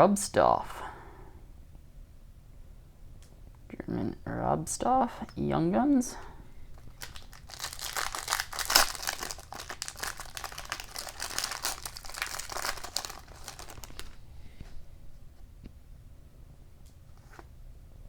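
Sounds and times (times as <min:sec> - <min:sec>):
foil wrapper crinkling: 0:06.8 - 0:14.3.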